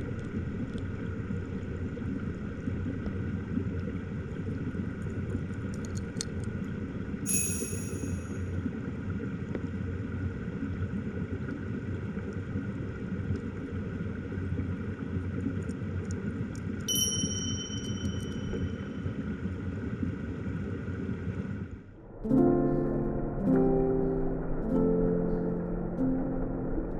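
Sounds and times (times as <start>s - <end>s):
brief high pings: 7.3s - 8.4s, 16.9s - 19.1s.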